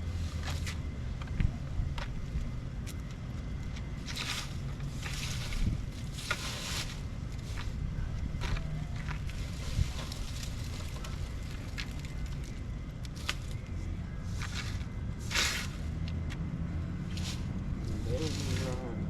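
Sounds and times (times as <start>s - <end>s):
low rumble: 0.0s - 19.0s
rustle: 4.0s - 16.2s, 16.9s - 19.0s.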